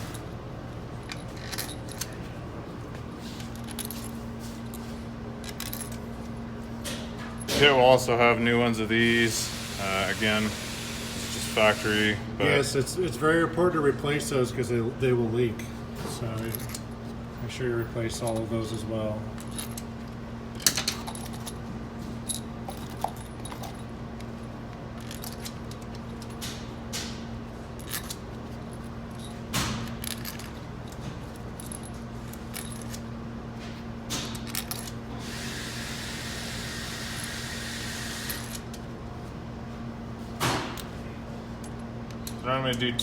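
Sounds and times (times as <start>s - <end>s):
steady electrical hum: 0.0s - 43.0s
hiss: 9.4s - 12.2s, 35.2s - 38.5s
metal tools clinking: 15.6s - 16.8s.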